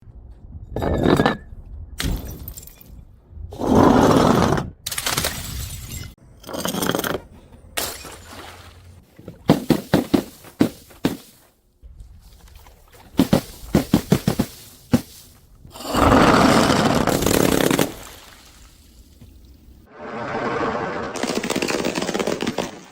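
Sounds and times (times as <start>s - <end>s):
glass bottles smashing: 5.1s - 7.0s, 7.8s - 8.6s.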